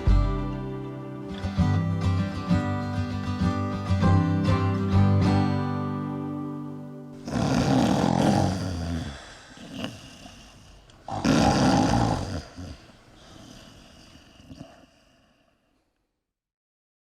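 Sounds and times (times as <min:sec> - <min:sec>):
man snoring: 0:07.2 - 0:15.2
quiet breathing: 0:07.2 - 0:16.2.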